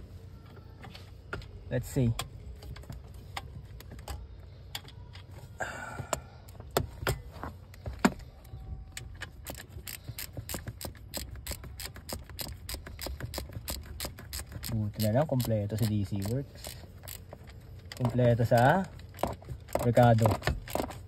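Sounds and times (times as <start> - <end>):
ratchet wrench clicking: 9.0 - 21.0.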